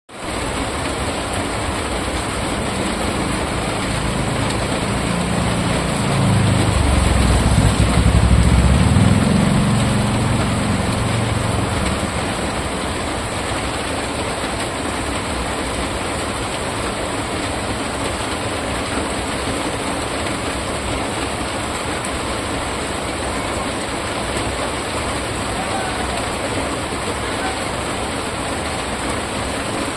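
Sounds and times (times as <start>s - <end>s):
steady rain: 0.1s - 29.9s
low rumble: 5.4s - 12.8s.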